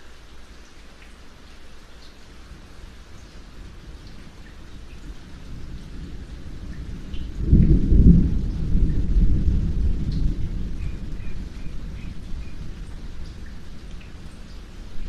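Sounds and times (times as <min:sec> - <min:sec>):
steady rainfall: 0:00.0 - 0:15.0
thunder rumbling: 0:03.4 - 0:15.0.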